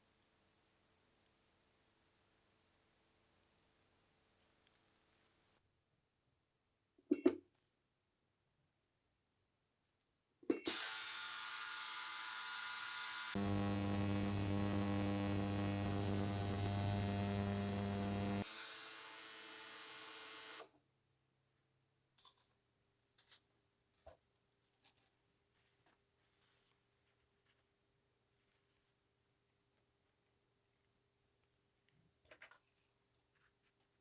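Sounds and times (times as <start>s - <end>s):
rotary polishing tool whine: 10.7s - 20.6s.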